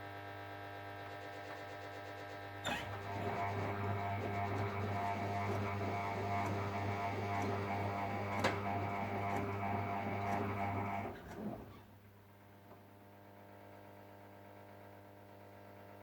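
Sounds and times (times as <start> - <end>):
washing machine motor droning: 2.6 - 11.8.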